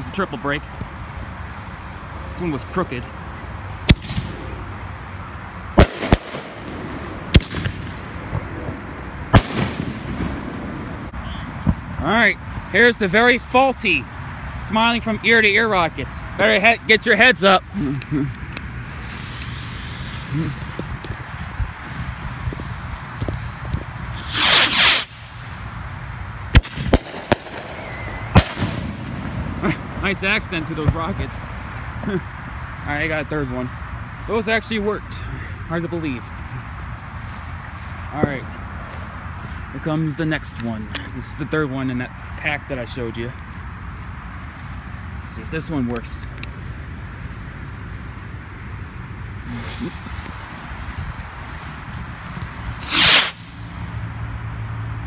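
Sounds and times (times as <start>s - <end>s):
rocket launching whoosh: 3.9s - 4.5s, 5.8s - 11.1s, 24.2s - 25.3s, 26.5s - 29.6s, 52.8s - 53.6s
firework bangs: 3.9s - 4.6s, 5.8s - 11.9s, 24.2s - 25.5s, 26.5s - 30.0s, 52.8s - 53.6s
firework shell bangs: 5.8s - 8.0s, 26.6s - 29.6s, 52.8s - 53.5s.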